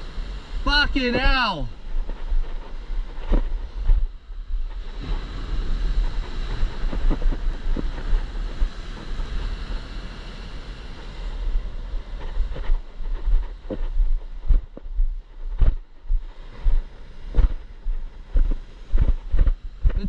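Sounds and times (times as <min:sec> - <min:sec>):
ocean surf: 0:00.0 - 0:13.3
wind buffeting microphone: 0:00.0 - 0:20.0.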